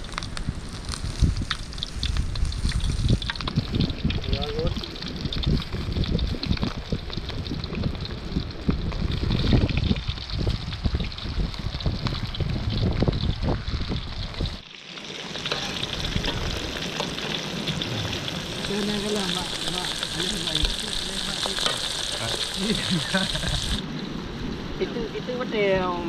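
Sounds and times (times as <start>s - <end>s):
low rumble: 0.0s - 14.6s
food sizzling in hot oil: 0.0s - 23.8s.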